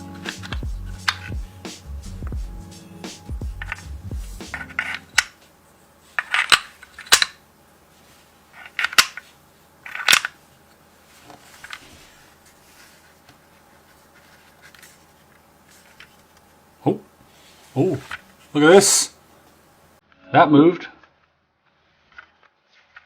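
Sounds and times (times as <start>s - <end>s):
crayons clicking and rattling: 0.2s - 1.4s, 3.6s - 3.9s, 4.5s - 5.4s, 6.1s - 7.4s, 8.5s - 10.4s.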